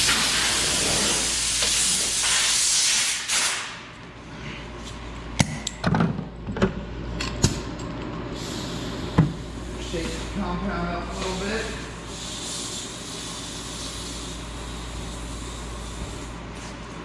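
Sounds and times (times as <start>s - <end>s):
air blow gun hissing: 0.0s - 3.8s, 8.4s - 16.4s.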